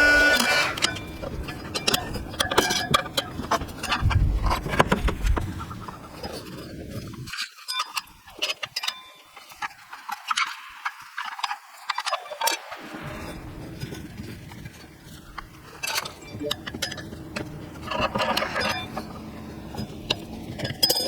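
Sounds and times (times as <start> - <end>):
low rumble: 12.8 - 16.6.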